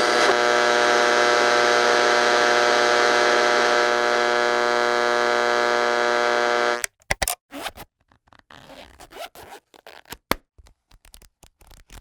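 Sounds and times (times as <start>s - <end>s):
electric machine hum: 0.0s - 6.9s.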